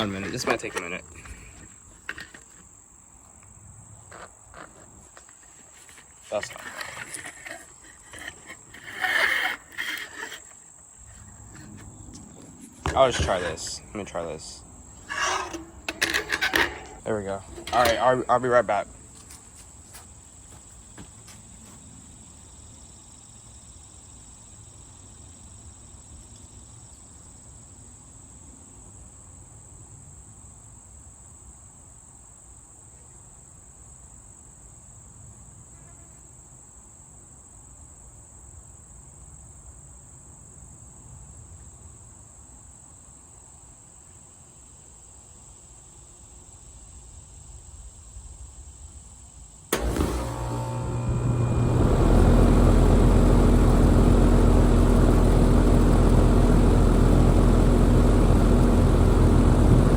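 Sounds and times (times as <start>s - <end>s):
insects trilling: 0.0s - 29.0s.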